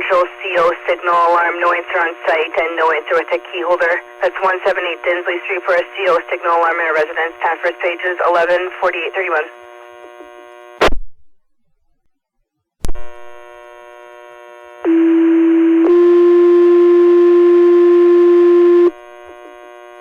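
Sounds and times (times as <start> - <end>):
faint steady hum: 0.0 - 10.8, 12.9 - 20.0
radio clicking: 0.1 - 10.3.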